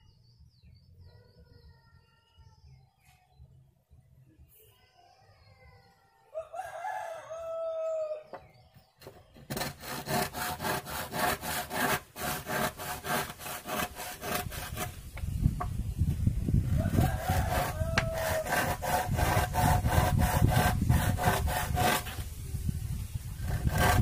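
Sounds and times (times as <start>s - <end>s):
rooster crowing: 6.3s - 8.3s, 16.7s - 18.7s
hand saw cutting wood: 9.4s - 15.0s, 16.9s - 22.3s, 23.4s - 24.0s.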